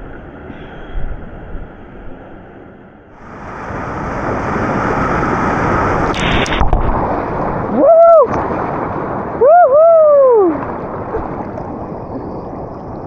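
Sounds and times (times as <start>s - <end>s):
loud rushing noise: 3.2s - 8.8s.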